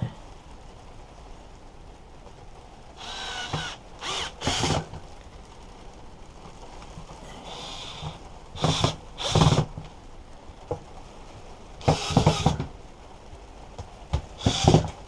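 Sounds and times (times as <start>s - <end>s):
cordless drill driving screws: 3.0s - 5.0s, 7.4s - 9.7s, 11.8s - 12.6s, 14.4s - 15.0s.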